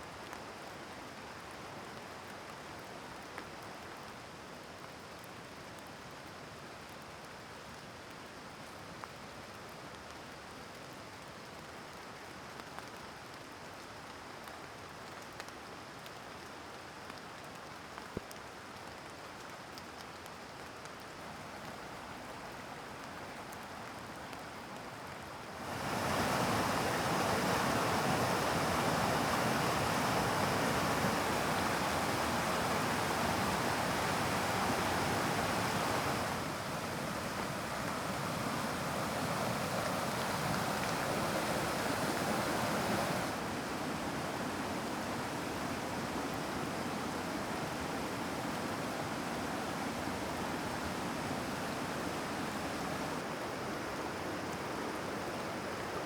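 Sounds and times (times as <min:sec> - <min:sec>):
stream water rushing: 0:21.2 - 0:56.0.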